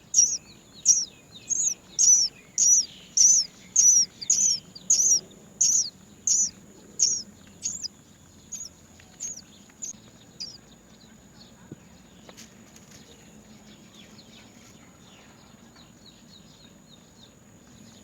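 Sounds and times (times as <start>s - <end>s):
nestlings begging calls: 0.0s - 10.6s.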